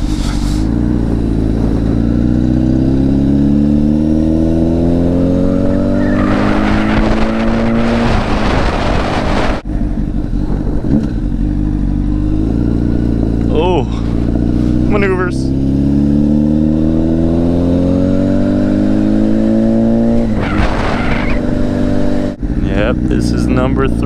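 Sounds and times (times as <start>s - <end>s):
wind noise on microphone: 0.0s - 13.5s
motorcycle engine accelerating: 0.0s - 24.0s.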